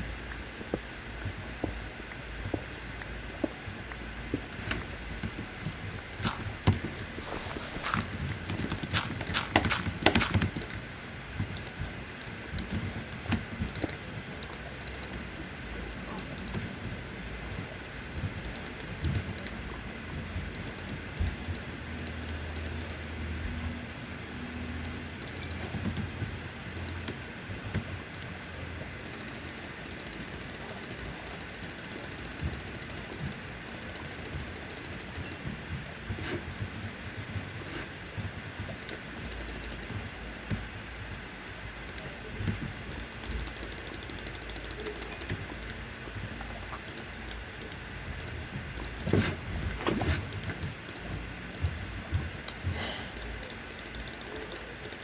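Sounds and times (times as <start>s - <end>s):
sharp clicks and taps: 7.8s - 10.8s
fast ticking: 29.0s - 35.4s, 38.8s - 40.0s, 41.9s - 45.8s, 53.1s - 55.0s.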